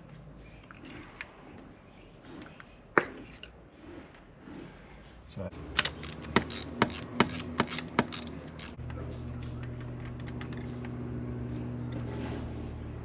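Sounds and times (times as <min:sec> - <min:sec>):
ratchet wrench clicking: 0:05.8 - 0:08.8.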